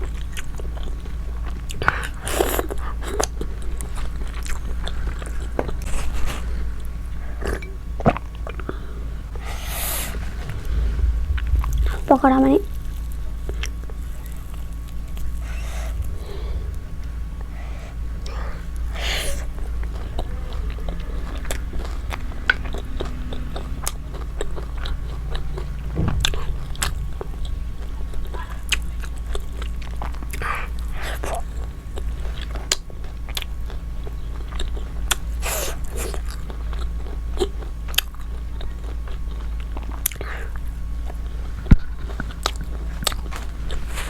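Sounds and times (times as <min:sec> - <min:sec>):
steady low hum: 0:00.0 - 0:44.0
chewing and biting: 0:18.2 - 0:44.0.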